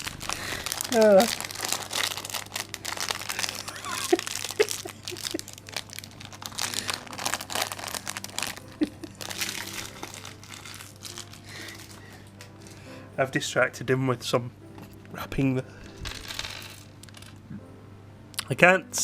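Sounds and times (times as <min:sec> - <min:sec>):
wrapping paper crinkling: 0:00.0 - 0:12.8.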